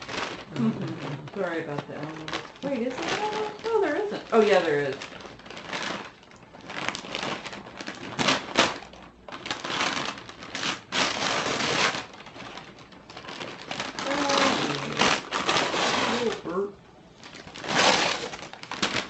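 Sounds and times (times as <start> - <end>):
wrapping paper tearing: 0.0 - 19.0.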